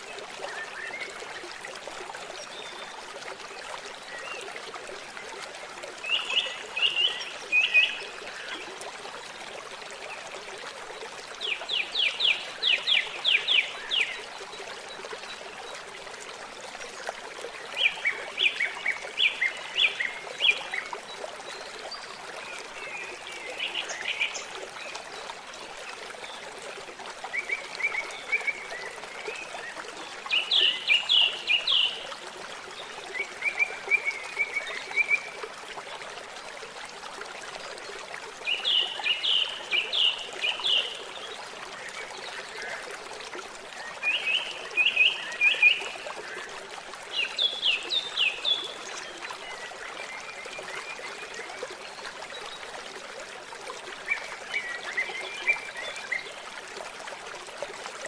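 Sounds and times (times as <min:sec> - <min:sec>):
running water trickling: 0:00.0 - 0:58.0
songbirds singing: 0:27.3 - 0:32.2.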